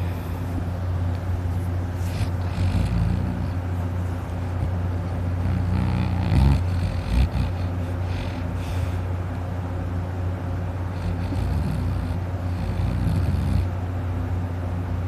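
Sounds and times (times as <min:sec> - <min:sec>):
man snoring heavily: 0:02.1 - 0:03.6, 0:05.2 - 0:08.9, 0:10.9 - 0:13.7.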